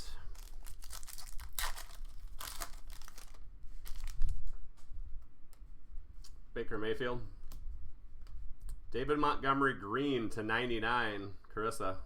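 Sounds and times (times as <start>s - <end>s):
card pack wrapper crinkling and tearing: 0.0s - 4.4s
cards rustling: 0.1s - 4.4s.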